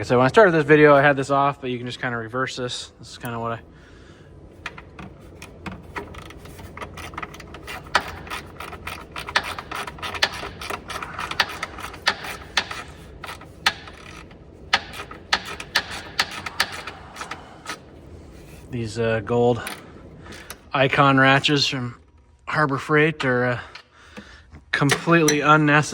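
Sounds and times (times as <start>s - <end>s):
hand ratchet clicking: 4.6s - 17.8s.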